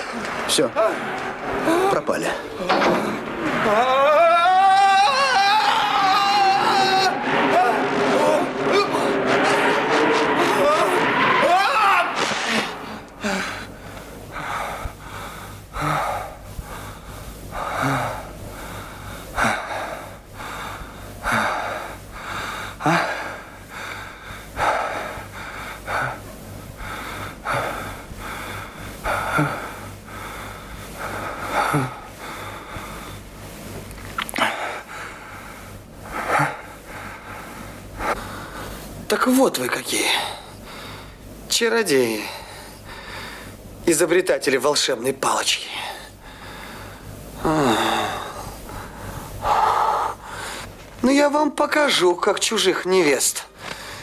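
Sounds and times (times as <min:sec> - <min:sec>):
person breathing heavily: 0:00.0 - 0:06.1, 0:12.2 - 0:33.7, 0:34.3 - 0:39.1, 0:40.0 - 0:41.5, 0:42.1 - 0:43.8, 0:45.7 - 0:50.8, 0:53.6 - 0:54.0
faint steady hum: 0:00.0 - 0:54.0.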